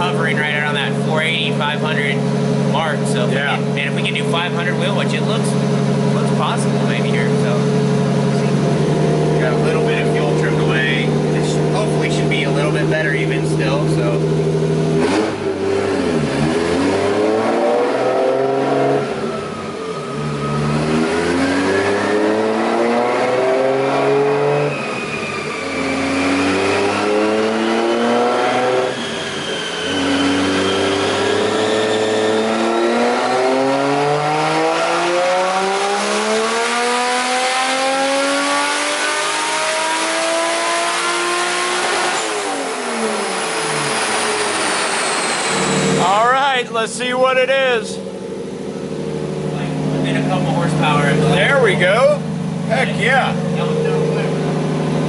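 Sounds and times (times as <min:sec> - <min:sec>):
car engine revving on dyno: 0:00.0 - 0:55.0
turbo whistling: 0:24.7 - 0:27.0, 0:27.6 - 0:33.2.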